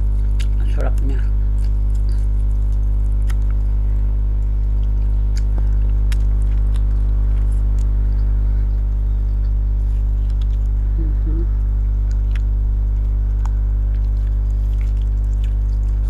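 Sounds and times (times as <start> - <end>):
person chewing food: 0.0 - 16.0
steady low hum: 0.0 - 16.0
wet mouth clicks and smacks: 1.6 - 3.6.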